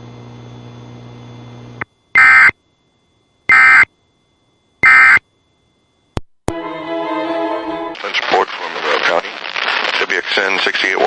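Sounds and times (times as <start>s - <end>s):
faint low hum: 0.1s - 6.2s.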